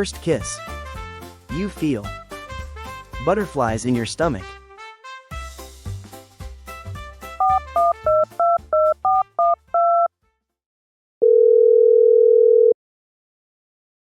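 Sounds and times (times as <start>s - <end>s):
soft music: 0.0s - 10.0s
telephone ringing tone: 11.2s - 12.8s.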